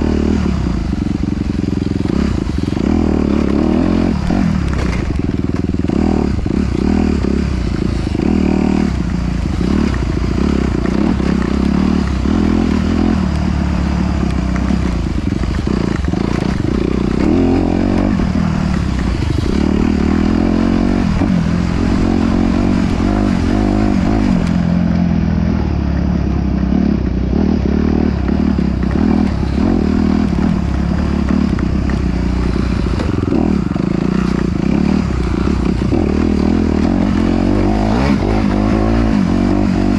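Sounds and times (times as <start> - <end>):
off-road vehicle engine revving: 0.0 - 39.9
rattling and scraping over terrain: 0.0 - 39.9.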